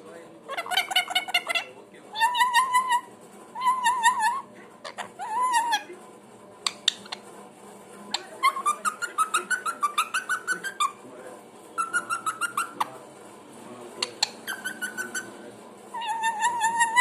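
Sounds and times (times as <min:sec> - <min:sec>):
parrot clicks: 0:06.7 - 0:07.2.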